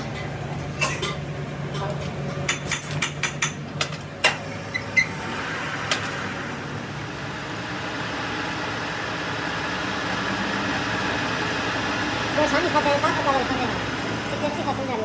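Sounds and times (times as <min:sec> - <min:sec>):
steady machine noise: 0:04.4 - 0:15.0.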